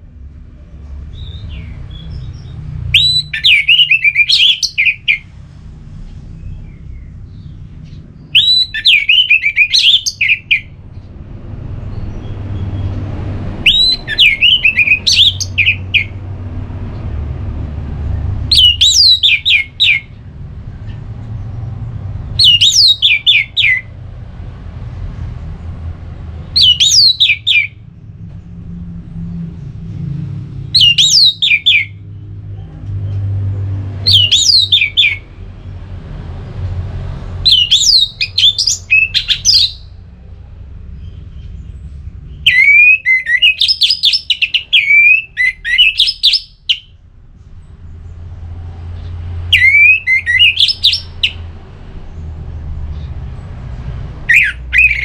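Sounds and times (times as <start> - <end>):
steady low rumble: 0.0 - 43.5, 46.5 - 55.0
thrush singing whistled notes: 1.1 - 5.3, 8.2 - 10.8, 13.6 - 16.2, 18.5 - 20.2, 22.4 - 23.9, 26.4 - 27.8, 30.8 - 32.0, 34.1 - 35.3, 37.4 - 40.0, 41.0 - 47.0, 49.4 - 51.5, 54.2 - 55.0.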